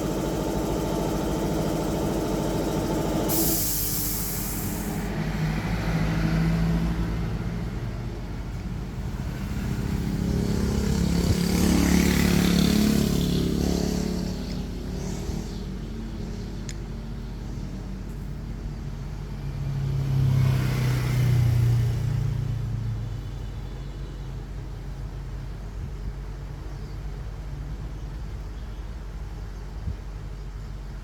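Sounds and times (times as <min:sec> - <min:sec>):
engine running: 0:00.0 - 0:06.1, 0:08.3 - 0:23.3
short burst of air hiss: 0:03.0 - 0:05.1.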